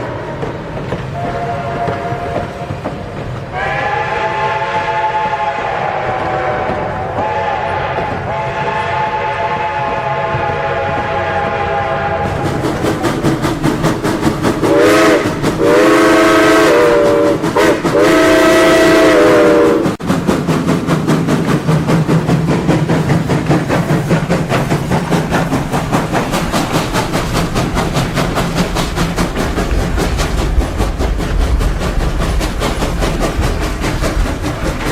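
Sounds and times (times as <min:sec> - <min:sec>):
wheels clacking over rail joints: 0:00.0 - 0:11.6, 0:12.2 - 0:34.9
moving train noise: 0:00.0 - 0:34.9
train horn blasts: 0:01.2 - 0:02.8, 0:03.5 - 0:12.6, 0:14.7 - 0:20.0.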